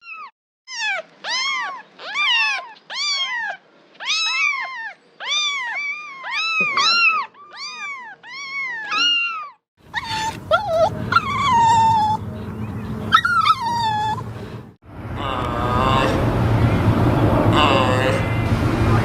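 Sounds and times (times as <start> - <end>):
cat meowing: 0.0 - 12.2, 13.1 - 14.2.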